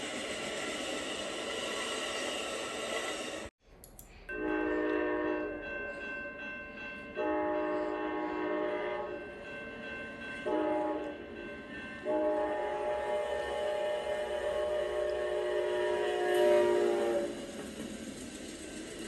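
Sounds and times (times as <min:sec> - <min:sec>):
locomotive air horn blasts: 0:04.3 - 0:05.6, 0:07.2 - 0:09.2, 0:10.5 - 0:11.2, 0:12.0 - 0:17.4.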